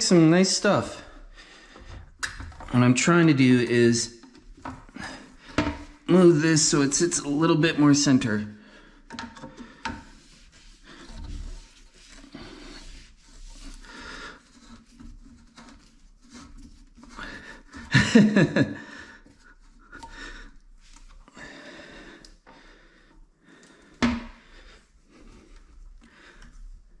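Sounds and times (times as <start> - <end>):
toilet being shifted: 0.8 - 7.6, 8.9 - 19.4, 23.8 - 24.7
person breathing: 0.9 - 2.2, 12.2 - 14.8, 18.8 - 20.7, 21.3 - 26.7.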